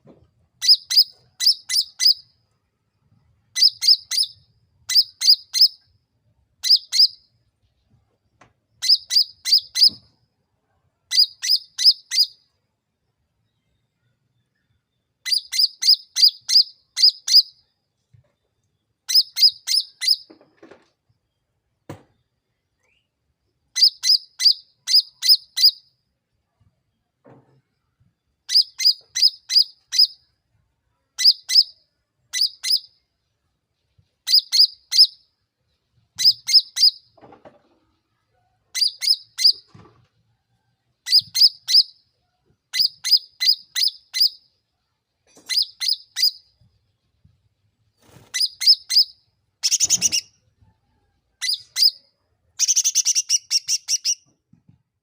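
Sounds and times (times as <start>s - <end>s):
songbird singing sharp notes: 0.6s - 2.3s, 3.6s - 5.9s, 48.1s - 50.4s, 51.4s - 54.3s.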